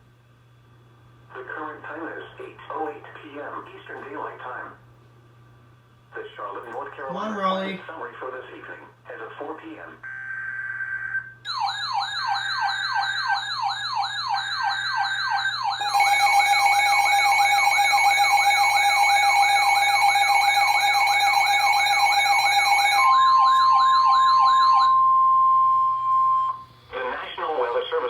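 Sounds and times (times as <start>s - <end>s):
yelping siren wail: 10.1s - 26.6s
steady alarm tone: 10.1s - 26.7s.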